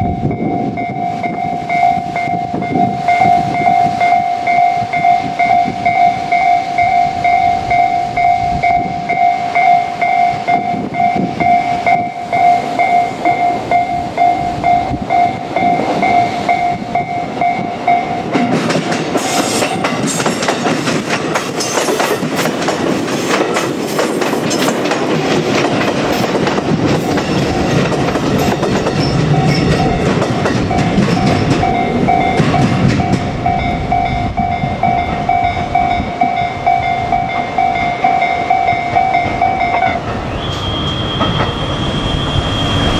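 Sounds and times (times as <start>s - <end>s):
level-crossing alarm clanging: 0.0s - 42.9s
train wheels clattering over rails: 10.5s - 36.4s.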